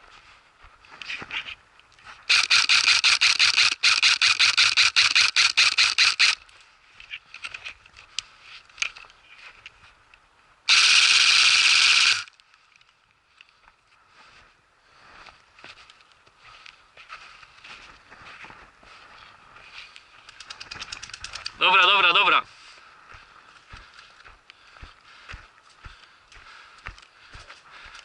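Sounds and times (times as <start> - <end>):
airsoft rifle automatic fire: 2.3 - 6.4, 10.7 - 12.3.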